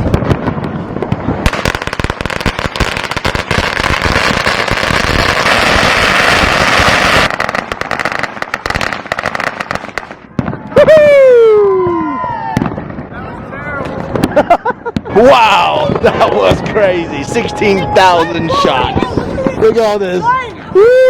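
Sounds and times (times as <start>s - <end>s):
firecracker string crackling: 0.0s - 12.0s.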